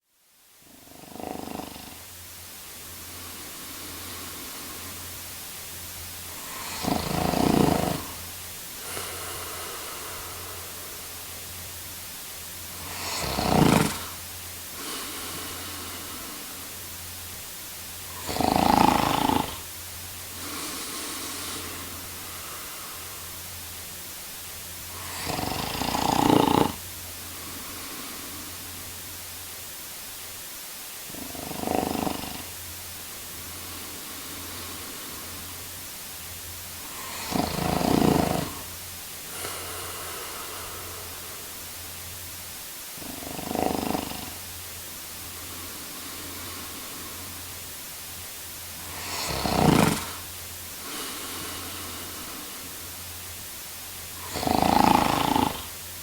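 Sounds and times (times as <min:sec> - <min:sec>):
quiet breaths: 0:00.0 - 0:56.0
man snoring: 0:00.6 - 0:02.2, 0:03.0 - 0:05.2, 0:06.3 - 0:11.3, 0:12.7 - 0:16.8, 0:18.0 - 0:19.7, 0:20.3 - 0:23.4, 0:24.9 - 0:28.7, 0:31.1 - 0:32.6, 0:33.5 - 0:35.6, 0:36.8 - 0:41.7, 0:43.0 - 0:44.5, 0:45.3 - 0:47.4, 0:48.8 - 0:52.9, 0:54.1 - 0:55.9.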